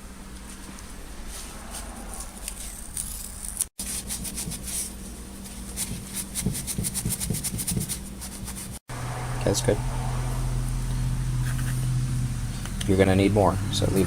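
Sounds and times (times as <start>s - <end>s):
dry scratching and scraping: 0.6s - 8.8s, 11.3s - 12.6s.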